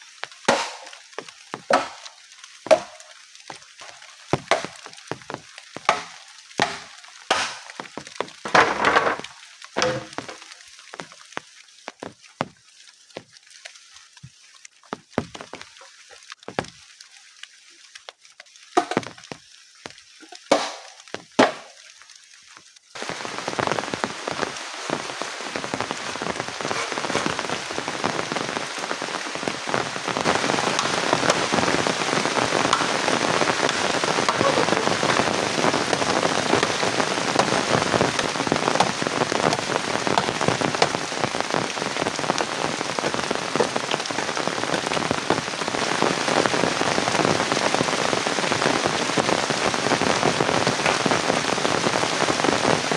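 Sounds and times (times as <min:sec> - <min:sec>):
heavy rain: 0:00.0 - 0:13.3, 0:22.9 - 0:52.9
sharp knocks: 0:00.5 - 0:00.9, 0:01.6 - 0:02.1, 0:02.7 - 0:03.0, 0:04.4 - 0:04.8, 0:05.8 - 0:07.8, 0:09.8 - 0:10.4.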